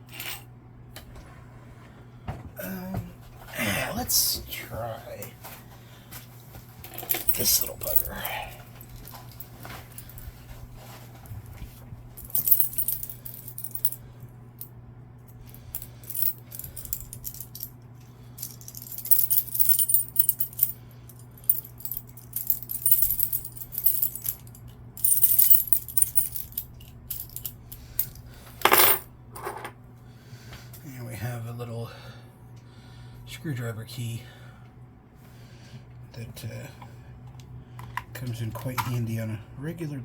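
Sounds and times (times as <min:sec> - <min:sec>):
steady low hum: 0:00.0 - 0:40.0
metal tools clinking: 0:06.9 - 0:10.2, 0:12.2 - 0:14.0, 0:18.4 - 0:20.7, 0:21.4 - 0:29.7.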